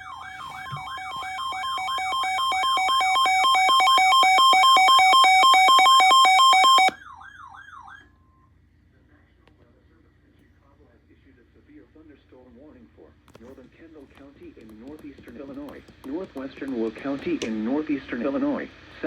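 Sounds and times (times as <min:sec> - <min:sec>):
pulsing two-tone electronic alarm: 0:00.0 - 0:08.0
electronic wailing siren: 0:00.0 - 0:08.1.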